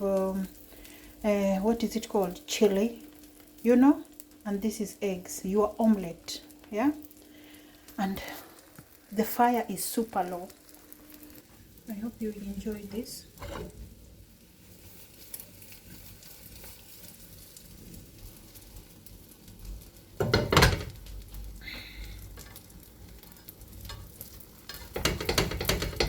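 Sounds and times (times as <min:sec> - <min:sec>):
omelette sizzling in a pan: 0:00.0 - 0:26.0
utensil clattering against pan: 0:13.4 - 0:13.8, 0:20.2 - 0:21.0, 0:23.4 - 0:26.0.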